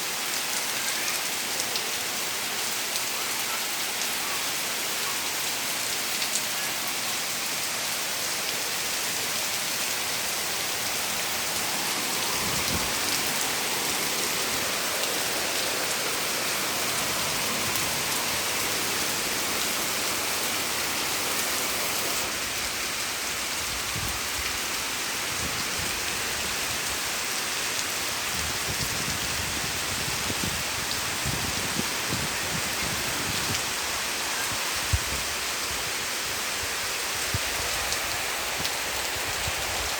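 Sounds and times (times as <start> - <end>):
heavy rain among trees: 0.0 - 39.9.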